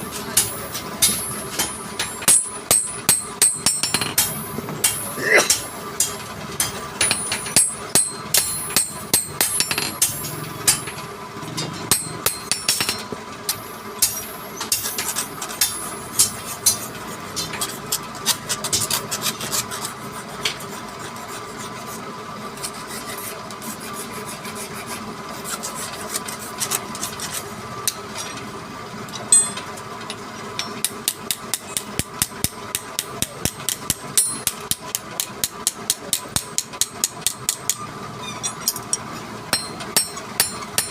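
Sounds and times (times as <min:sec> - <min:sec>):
rasping or rubbing: 0:16.4 - 0:27.5.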